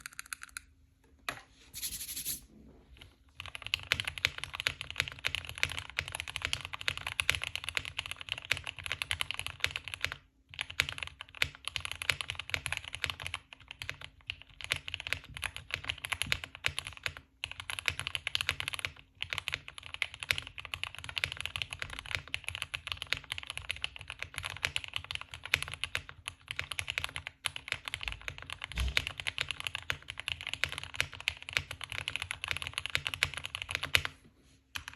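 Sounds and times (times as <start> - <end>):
fast typing on keyboard: 3.4 - 34.2.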